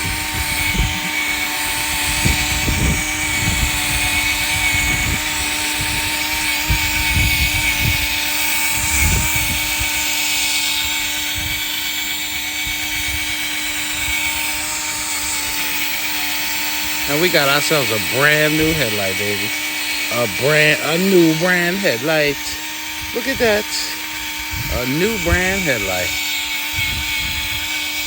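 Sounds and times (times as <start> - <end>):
wind buffeting microphone: 0.0 - 10.1, 24.1 - 27.7
cordless drill running: 0.0 - 28.0.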